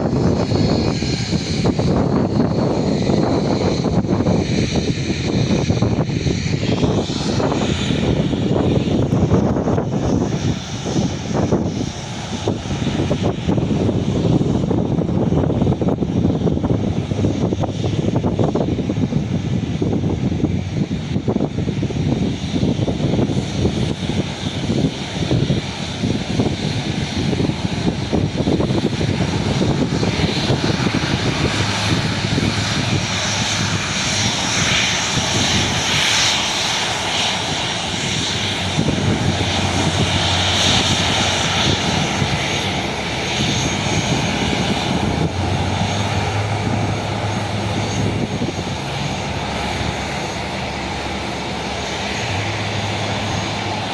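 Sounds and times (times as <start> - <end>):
jet engines at takeoff: 0.0 - 53.9.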